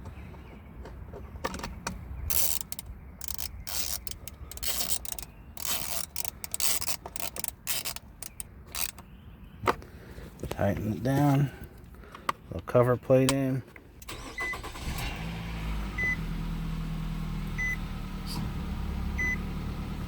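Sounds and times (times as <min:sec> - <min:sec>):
metal parts clicking and rattling: 0:01.4 - 0:09.0
hand tool driving screws: 0:01.5 - 0:09.0.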